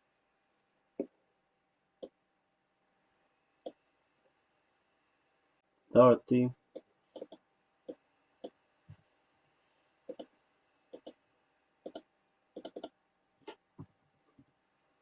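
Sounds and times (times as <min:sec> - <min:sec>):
computer mouse clicks: 0:06.7 - 0:08.6, 0:10.1 - 0:10.3, 0:10.9 - 0:11.2, 0:11.8 - 0:13.6.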